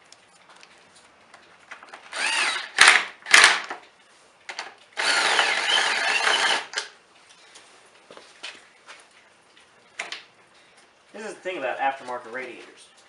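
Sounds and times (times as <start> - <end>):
impact driver spinning bolts: 5.0 - 6.9.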